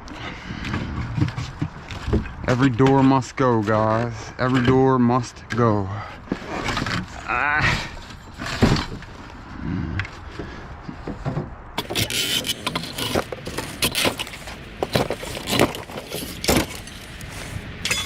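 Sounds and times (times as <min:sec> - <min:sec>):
metal rustle: 0:06.2 - 0:09.5, 0:11.0 - 0:18.0
scrap metal clanking: 0:06.3 - 0:09.2, 0:11.2 - 0:18.0.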